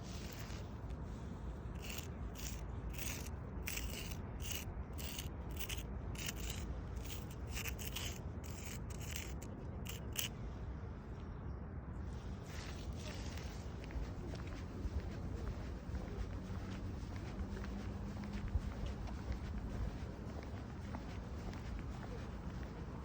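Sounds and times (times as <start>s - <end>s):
steady low rumble: 0.0s - 23.0s
footsteps on gritty surface: 1.8s - 10.3s.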